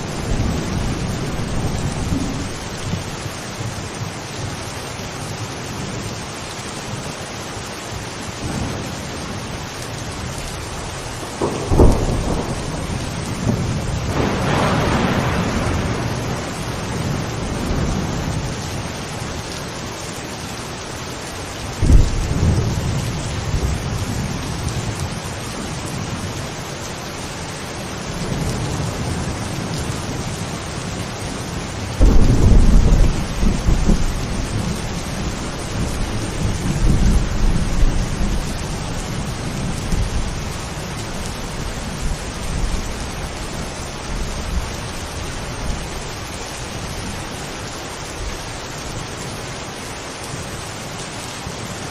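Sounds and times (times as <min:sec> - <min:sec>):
thunder cracks and rumbles: 0:00.0 - 0:03.8, 0:10.2 - 0:19.6, 0:21.7 - 0:25.2, 0:31.9 - 0:45.8
heavy rain: 0:00.0 - 0:51.9.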